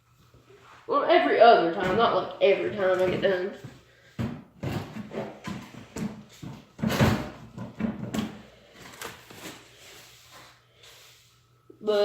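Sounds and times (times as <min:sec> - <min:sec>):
broom sweeping a floor: 0:00.3 - 0:01.0, 0:09.4 - 0:12.0.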